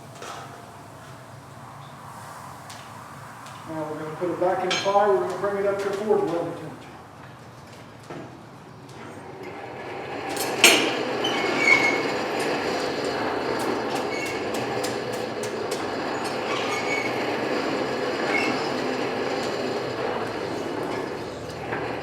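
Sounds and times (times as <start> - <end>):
air rushing through fire: 0.8 - 6.1.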